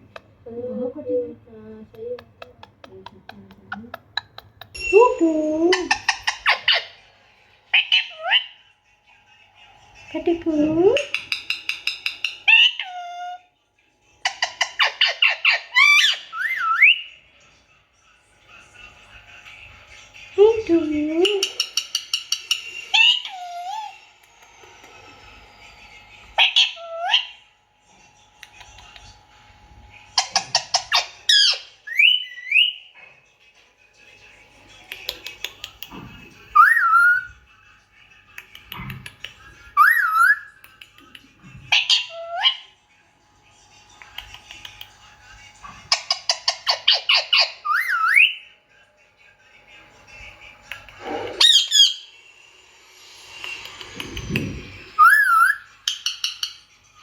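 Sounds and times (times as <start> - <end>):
parrot squawking: 5.7 - 7.1, 7.7 - 8.7, 11.0 - 13.5, 14.2 - 17.1, 21.4 - 24.0, 26.4 - 27.4, 30.2 - 32.9, 36.5 - 37.4, 39.8 - 40.6, 41.7 - 42.8, 45.9 - 48.4, 51.0 - 52.2, 54.4 - 56.6
parrot screeching: 5.8 - 7.0, 7.7 - 8.6, 12.2 - 13.5, 14.3 - 17.0, 22.9 - 24.0, 26.4 - 27.4, 30.2 - 32.8, 36.6 - 37.3, 39.8 - 40.5, 41.7 - 42.8, 45.9 - 48.4, 51.3 - 52.1, 55.0 - 56.6
parrot wavering whistle: 39.8 - 40.5, 55.0 - 55.8.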